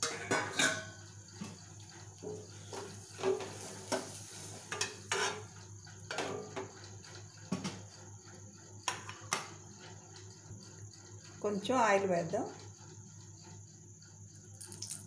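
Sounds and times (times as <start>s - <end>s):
pots and pans clinking: 0.0s - 6.8s.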